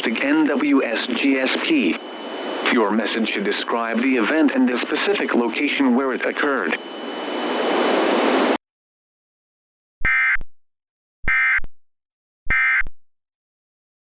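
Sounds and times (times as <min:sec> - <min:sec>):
warbling data tone bursts: 0:00.1 - 0:07.6.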